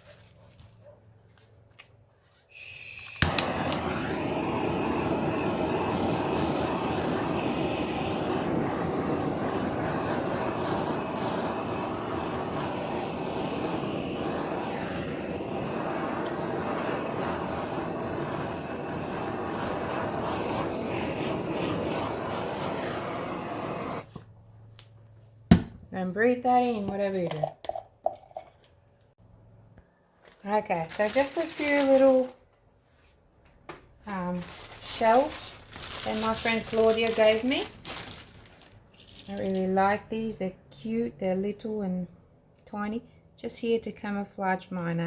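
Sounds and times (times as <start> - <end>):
heat gun blowing: 2.5 - 24.2, 34.4 - 39.6
fan motor whine: 2.8 - 24.1.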